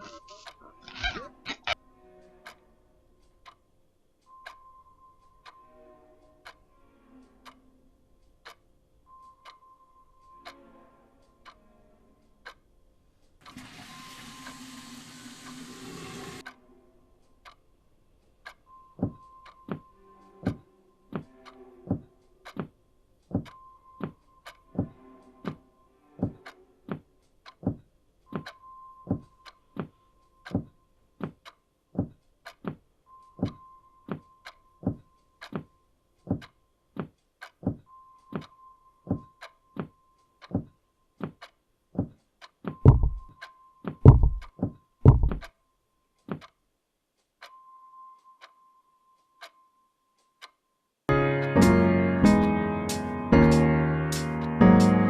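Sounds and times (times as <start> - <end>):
high beeping tone: 0.0 - 1.8, 42.8 - 43.3
sharp ticking: 41.3 - 45.5
heavy low thuds: 42.9 - 43.3, 44.1 - 45.4.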